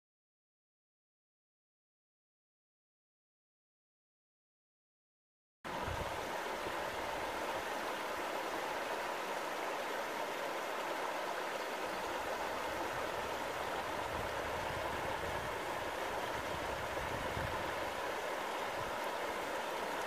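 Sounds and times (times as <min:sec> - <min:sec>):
stream water rushing: 0:05.7 - 0:20.0.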